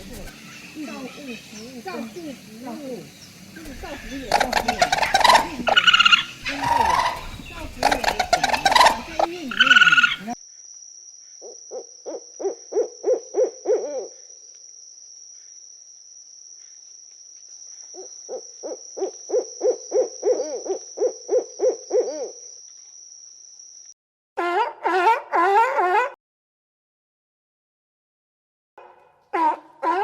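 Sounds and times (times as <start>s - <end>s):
short low hooting calls: 0.0s - 10.4s.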